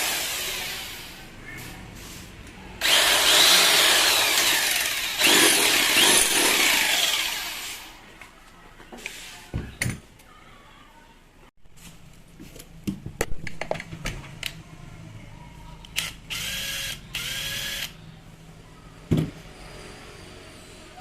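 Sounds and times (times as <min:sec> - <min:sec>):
small power tool motor whirring: 0:02.8 - 0:07.8, 0:16.3 - 0:17.9.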